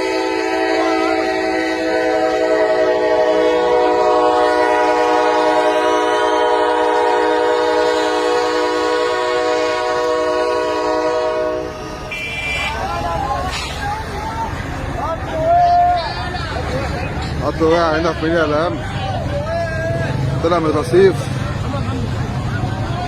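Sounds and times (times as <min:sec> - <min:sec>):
train horn blast: 0:00.0 - 0:12.9.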